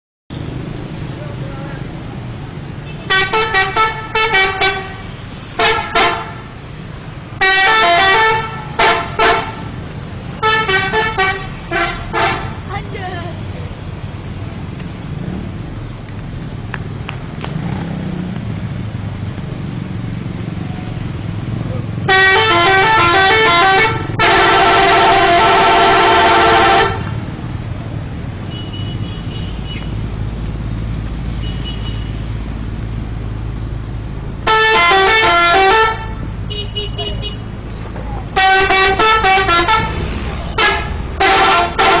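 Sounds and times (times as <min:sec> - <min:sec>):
road traffic rumble: 0:00.3 - 0:42.0
bus horn melody: 0:02.8 - 0:06.6, 0:07.4 - 0:12.7, 0:22.0 - 0:27.2, 0:34.4 - 0:37.6, 0:38.3 - 0:42.0
low engine rumble: 0:35.8 - 0:42.0.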